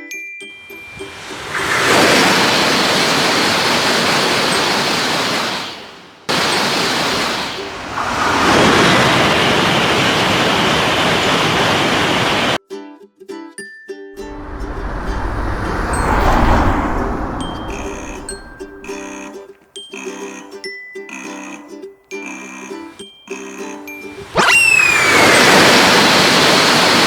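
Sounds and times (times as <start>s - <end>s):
trains rushing past: 0.8s - 12.6s, 14.2s - 19.1s.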